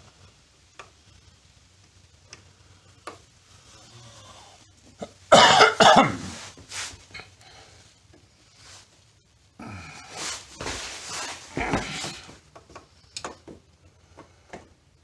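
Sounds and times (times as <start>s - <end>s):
person coughing: 5.0s - 6.5s, 11.5s - 12.2s.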